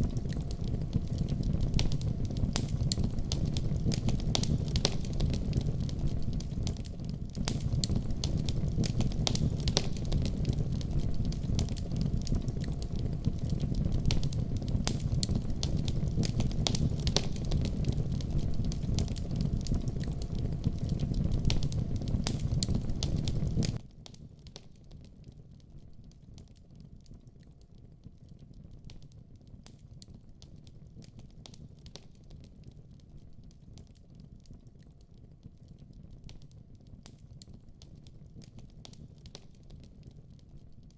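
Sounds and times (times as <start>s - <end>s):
fire crackling and popping: 0.0s - 40.9s
low fire rumble: 0.0s - 40.9s.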